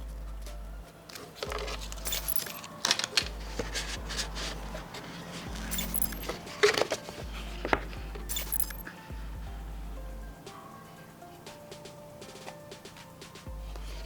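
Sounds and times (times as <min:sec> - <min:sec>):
small hard parts clinking: 0:00.0 - 0:09.5.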